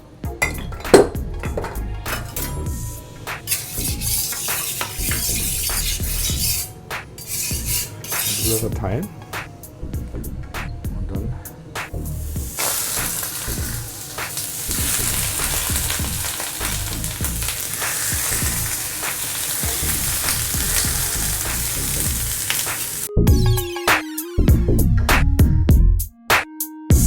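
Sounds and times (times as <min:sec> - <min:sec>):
loud sizzle on a griddle: 0:02.0 - 0:08.6, 0:12.0 - 0:23.1
electronic music: 0:23.1 - 0:24.9.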